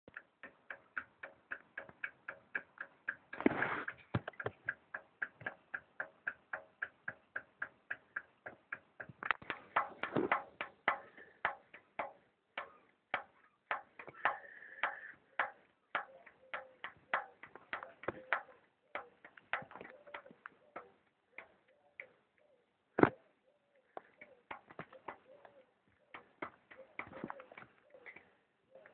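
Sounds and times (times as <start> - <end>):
engine piston taps: 0.1 - 22.2.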